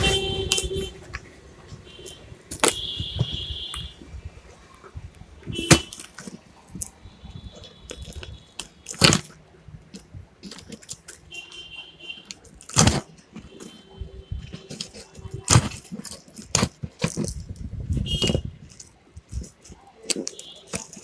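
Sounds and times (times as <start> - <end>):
metal parts clinking: 0.0 - 1.2.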